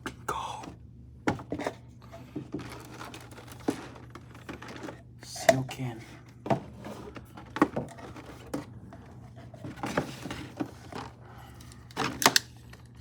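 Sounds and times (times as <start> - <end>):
packaging knocks and scrapes: 1.3 - 5.1, 6.4 - 11.2.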